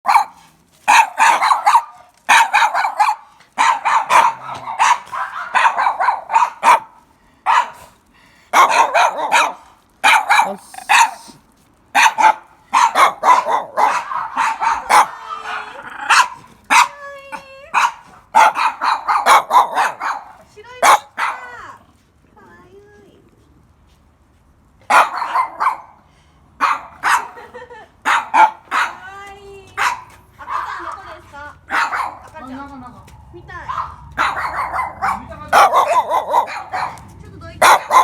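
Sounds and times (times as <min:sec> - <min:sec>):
puppy cry: 0:00.1 - 0:06.9, 0:08.6 - 0:11.4, 0:12.0 - 0:21.6, 0:33.7 - 0:38.0
puppies barking and yapping: 0:00.1 - 0:07.8, 0:08.6 - 0:11.4, 0:12.0 - 0:21.6, 0:26.6 - 0:29.0, 0:29.8 - 0:38.0.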